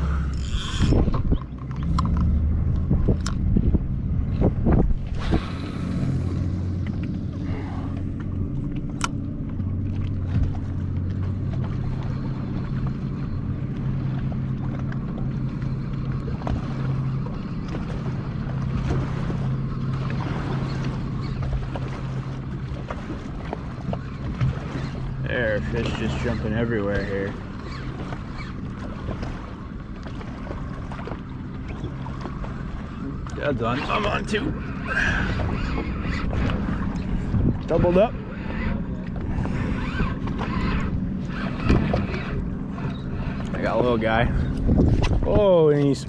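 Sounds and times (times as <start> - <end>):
wind on microphone: 0.0 - 7.8, 34.8 - 46.0
boat motor humming: 0.0 - 46.0.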